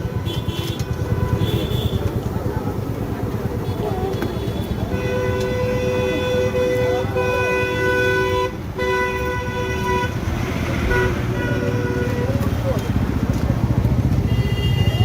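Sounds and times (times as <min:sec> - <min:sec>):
vehicle horn honking: 0:00.0 - 0:02.1, 0:03.6 - 0:12.6, 0:14.2 - 0:15.0
street traffic rumble: 0:00.0 - 0:15.0.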